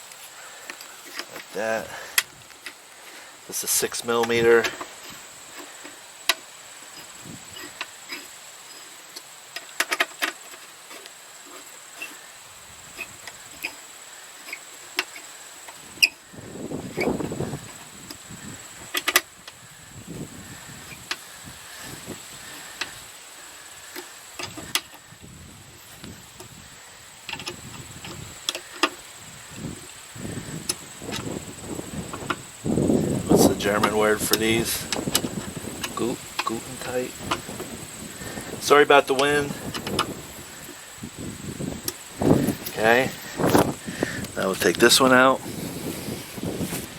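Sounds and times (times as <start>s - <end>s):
tool clicks and metallic knocks: 4.1s - 6.4s, 9.1s - 12.2s, 18.9s - 19.6s, 38.7s - 40.1s
wind buffeting microphone: 6.9s - 7.8s, 15.8s - 23.1s, 23.8s - 46.9s.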